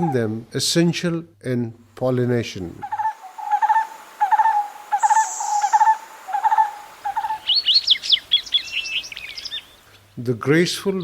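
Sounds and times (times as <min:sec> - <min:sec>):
small bird twittering: 0:02.8 - 0:10.1
barbet calling: 0:02.8 - 0:10.2.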